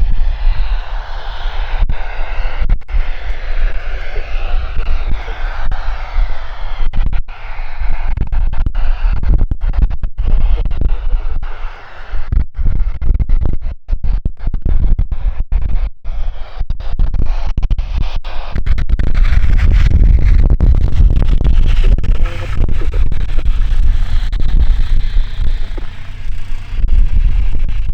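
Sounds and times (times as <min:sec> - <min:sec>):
microphone crackling: 0:00.0 - 0:11.6, 0:17.0 - 0:27.9
wind rumble on microphone: 0:00.0 - 0:27.9
piston aircraft engine running: 0:21.4 - 0:27.9.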